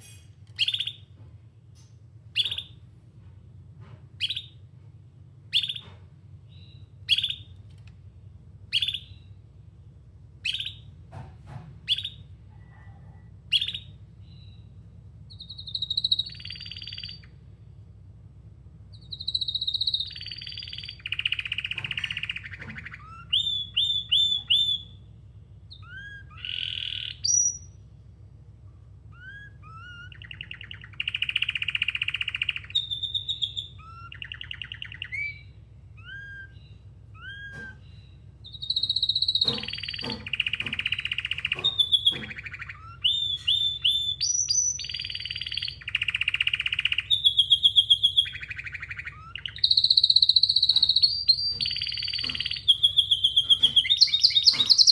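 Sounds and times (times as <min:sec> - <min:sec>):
canary chirping and trilling: 0:00.0 - 0:01.0, 0:02.3 - 0:02.8, 0:04.2 - 0:04.6, 0:05.5 - 0:07.5, 0:08.7 - 0:09.3, 0:10.4 - 0:10.9, 0:11.8 - 0:12.3, 0:13.5 - 0:14.7, 0:15.3 - 0:17.4, 0:18.9 - 0:25.0, 0:25.7 - 0:27.8, 0:29.1 - 0:54.9.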